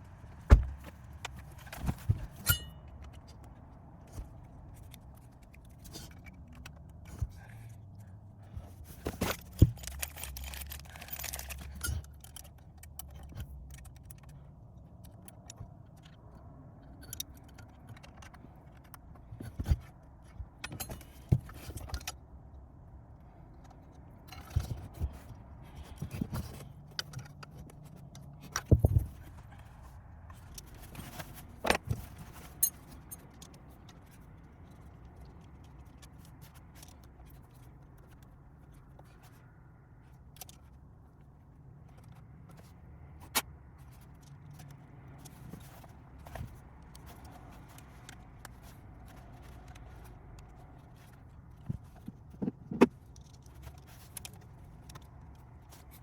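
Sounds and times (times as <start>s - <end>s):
hand tools clinking and knocking: 8.6s - 14.4s.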